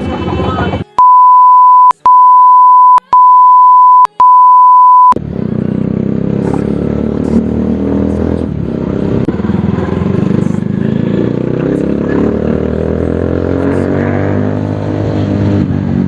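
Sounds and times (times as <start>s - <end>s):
high bleep tone: 1.0s - 5.2s
motorcycle engine running: 5.2s - 16.0s.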